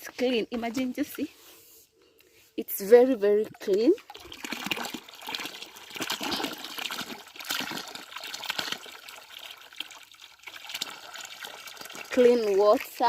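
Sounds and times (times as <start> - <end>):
water splashing out of a pipe: 3.6 - 13.0
person speaking: 12.1 - 13.0.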